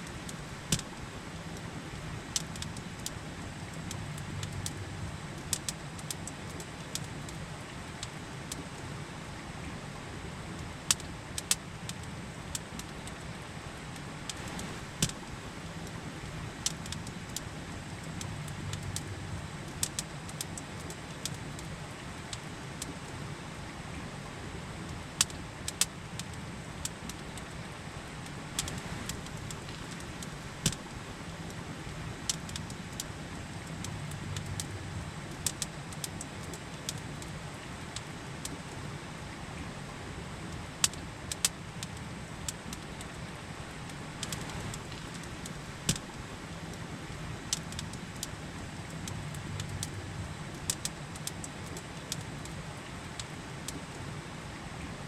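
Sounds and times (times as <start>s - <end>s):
campfire crackling and popping: 0.0s - 8.8s, 10.3s - 23.2s, 24.8s - 38.8s, 40.4s - 54.0s
river rushing: 13.2s - 55.0s.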